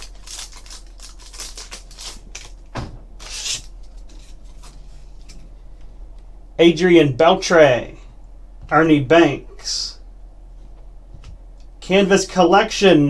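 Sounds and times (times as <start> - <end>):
wrapper rustling: 0.0 - 2.6
wrapper tearing: 0.0 - 2.6, 3.2 - 3.8.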